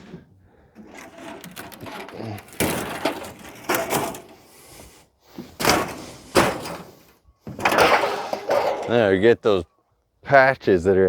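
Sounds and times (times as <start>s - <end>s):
sheet metal cracking and scraping: 0.0s - 4.5s, 5.6s - 7.0s, 7.6s - 9.1s.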